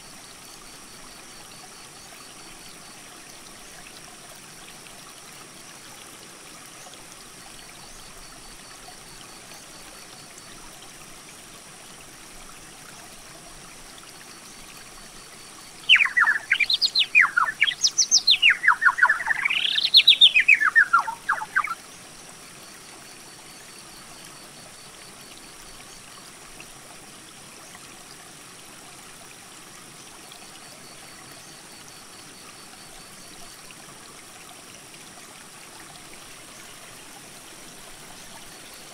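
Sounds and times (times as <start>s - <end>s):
creek running: 0.0s - 38.9s
bird calling: 15.9s - 21.8s.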